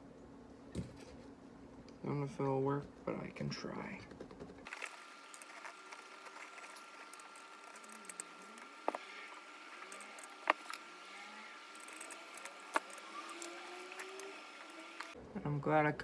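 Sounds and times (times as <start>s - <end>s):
wire cutters snipping: 4.7s - 15.2s.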